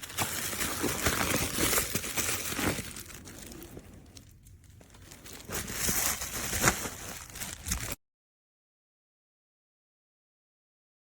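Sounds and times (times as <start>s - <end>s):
packaging crinkling: 0.0s - 8.0s.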